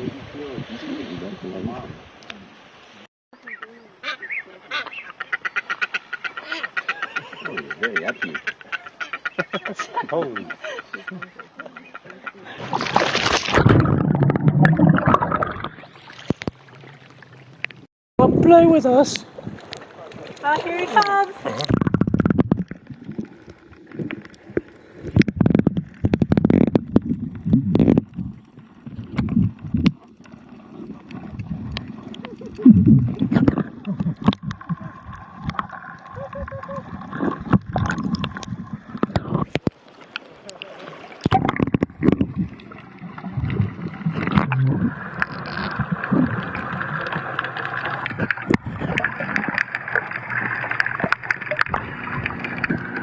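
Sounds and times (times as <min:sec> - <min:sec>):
underwater sloshing and bubbling: 0:06.6 - 0:17.9, 0:18.8 - 0:53.0.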